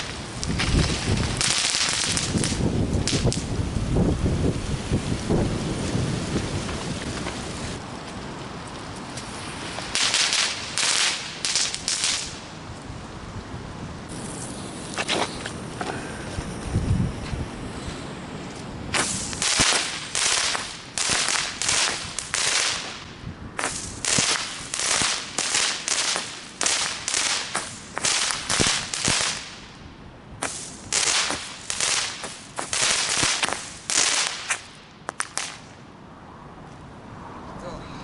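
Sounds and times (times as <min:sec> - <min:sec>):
fireworks cracking: 0:00.0 - 0:12.6, 0:14.1 - 0:16.7, 0:18.9 - 0:29.8, 0:30.4 - 0:35.8.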